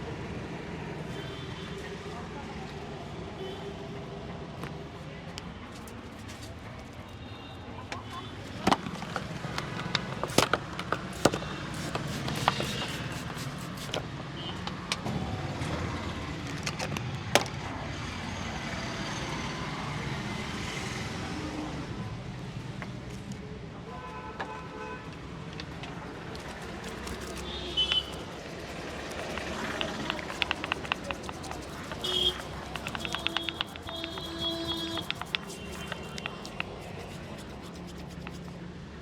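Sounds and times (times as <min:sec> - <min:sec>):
street traffic noise: 0:00.0 - 0:39.0
sharp clicks: 0:26.8 - 0:38.5.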